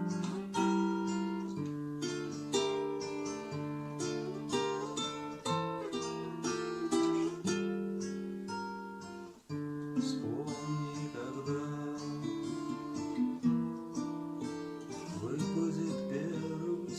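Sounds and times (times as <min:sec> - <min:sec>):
acoustic guitar strumming chords: 0:00.0 - 0:16.9.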